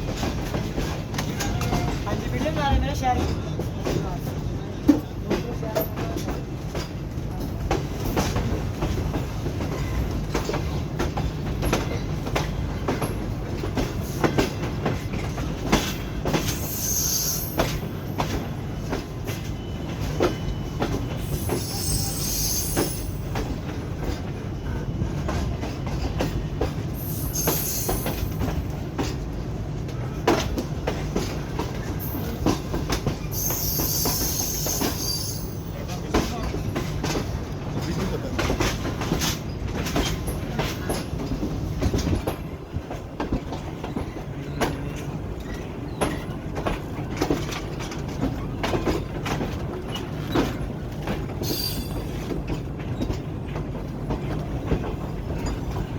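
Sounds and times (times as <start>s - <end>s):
train rumbling along track: 0.0s - 55.9s
wheels clacking over rail joints: 0.0s - 55.9s
high-pitched wheel squeal: 21.2s - 23.2s, 33.4s - 35.6s.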